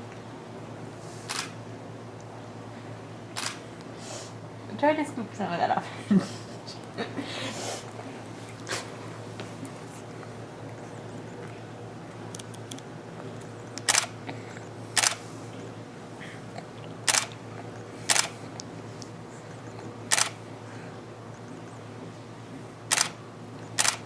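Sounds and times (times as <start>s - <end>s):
faint steady hum: 0.0s - 24.0s
camera shutter clicks: 1.3s - 1.6s, 3.4s - 3.6s, 13.8s - 14.1s, 15.0s - 15.2s, 17.1s - 17.3s, 18.1s - 18.3s, 20.1s - 20.4s, 22.9s - 23.2s, 23.8s - 24.0s.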